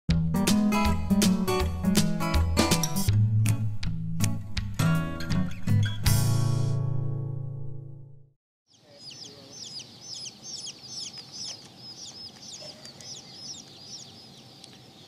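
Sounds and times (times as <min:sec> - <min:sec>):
baby chicks peeping: 0:08.7 - 0:15.0.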